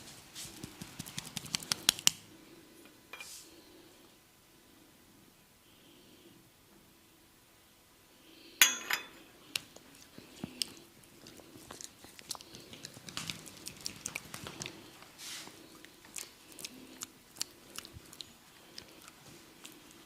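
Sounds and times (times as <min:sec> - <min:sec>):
hands massaging oiled skin: 0:00.4 - 0:02.2.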